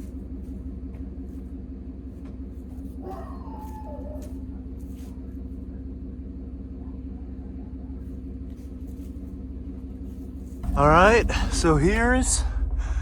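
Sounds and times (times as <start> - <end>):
low mechanical hum: 0.0 - 13.0.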